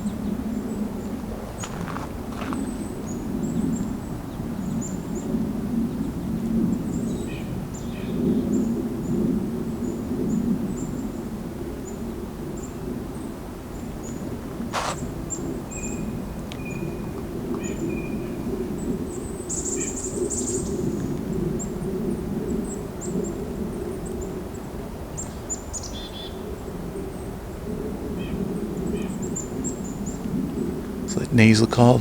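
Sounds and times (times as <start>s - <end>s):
nuthatch nasal calls: 14.8s - 15.0s.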